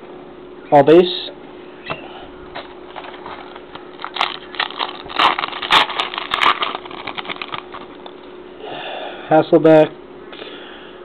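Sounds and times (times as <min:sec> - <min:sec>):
card pack wrapper crinkling and tearing: 0:02.9 - 0:08.2.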